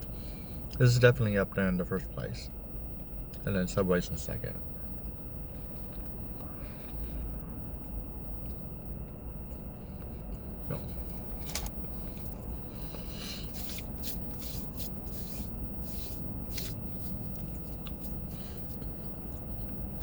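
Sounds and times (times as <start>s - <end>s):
steady low rumble: 0.0s - 20.0s
rubbing and scraping rustles: 10.8s - 18.9s.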